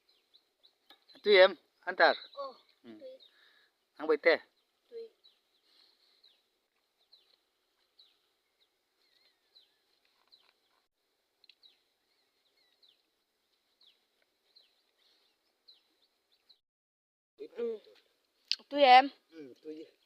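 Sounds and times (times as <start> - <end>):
faint bird chirps: 0.0 - 3.8, 8.0 - 10.8.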